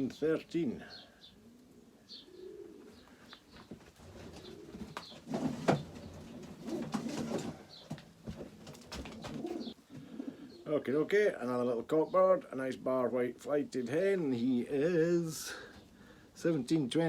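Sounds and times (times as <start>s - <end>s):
pigeons cooing: 0.0s - 10.9s.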